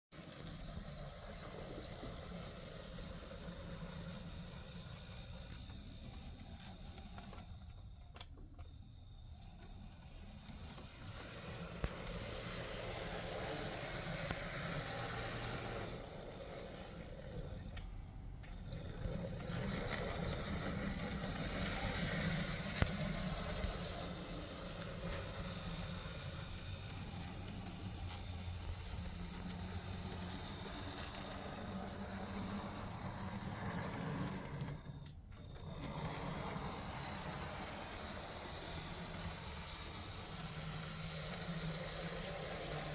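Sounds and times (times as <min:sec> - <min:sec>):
model train whirring rattle: 0:00.2 - 0:42.9.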